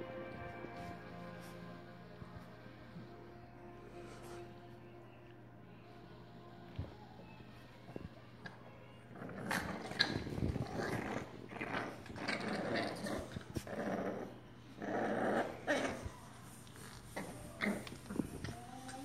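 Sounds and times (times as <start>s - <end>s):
puppies growling: 9.0s - 19.0s.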